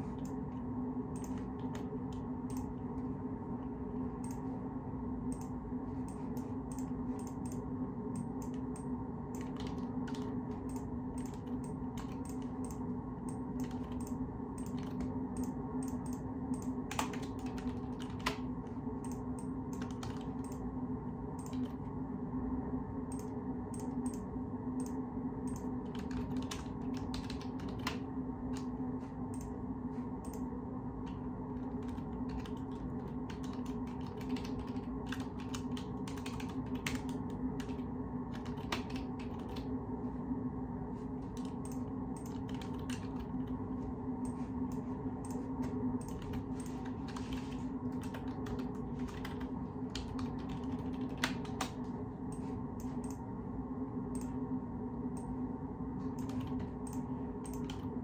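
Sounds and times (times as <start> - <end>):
steady low hum: 0.0 - 58.0
keyboard typing: 5.3 - 20.7, 21.4 - 21.8, 24.8 - 28.8, 31.1 - 39.7, 41.4 - 43.6, 44.3 - 53.2, 56.2 - 58.0.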